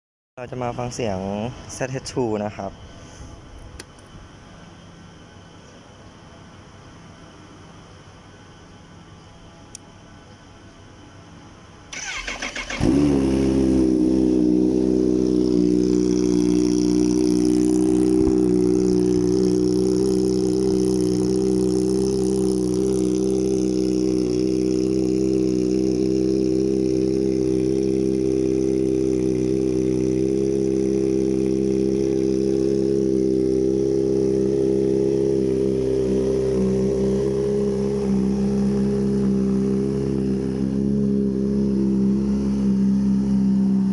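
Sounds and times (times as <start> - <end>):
motorcycle engine starting and idling: 11.9 - 43.9.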